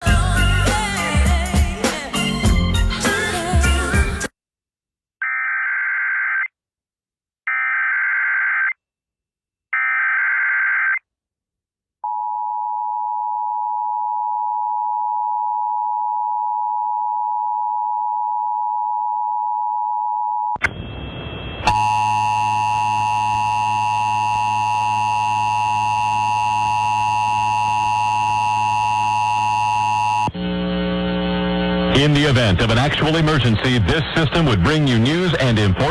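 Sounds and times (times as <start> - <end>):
low hum: 20.6 - 25.3
buzzy steady tone: 20.7 - 32.7
two-tone attention signal: 21.5 - 30.3
screechy digital data bursts: 21.7 - 30.3.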